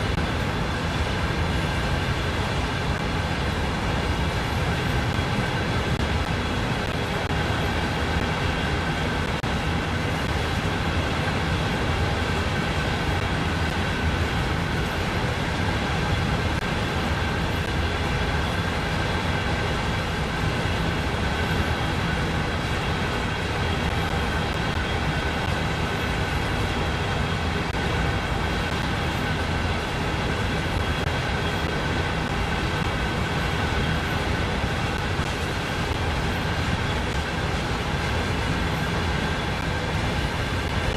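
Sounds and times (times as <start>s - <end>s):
freight train rumble: 0.0s - 40.9s.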